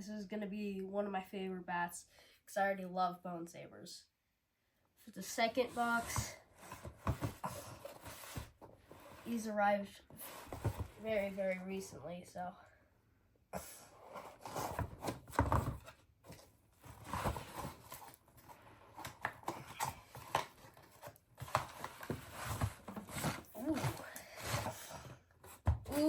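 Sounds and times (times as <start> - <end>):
cardboard rustling and tearing: 14.1 - 26.0.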